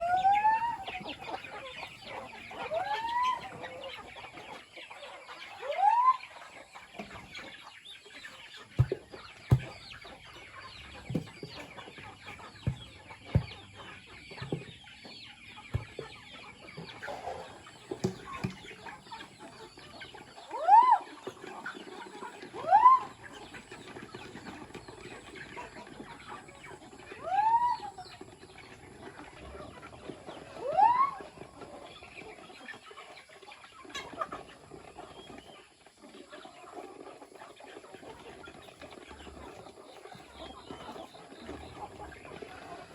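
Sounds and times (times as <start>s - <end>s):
chickens clucking and calling: 0.0s - 42.9s
sharp knocks: 8.8s - 9.9s, 12.7s - 13.7s.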